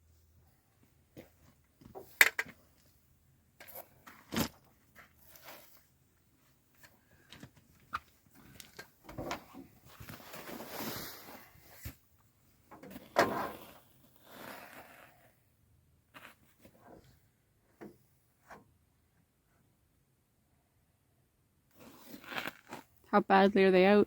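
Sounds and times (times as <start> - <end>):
rough scraping: 9.9 - 11.9, 12.9 - 15.3, 21.7 - 23.0.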